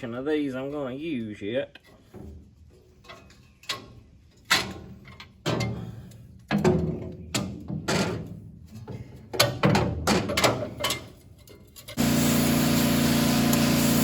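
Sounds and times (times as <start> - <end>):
metal parts clanking: 1.8 - 12.0
steady engine hum: 12.0 - 14.0.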